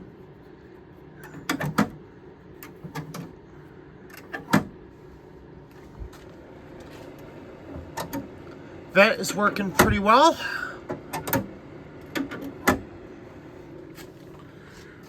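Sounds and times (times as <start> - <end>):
air conditioner low hum: 0.0 - 15.0
vent door clicks and clunks: 1.2 - 2.0, 2.6 - 3.4, 4.1 - 4.8, 10.9 - 12.9.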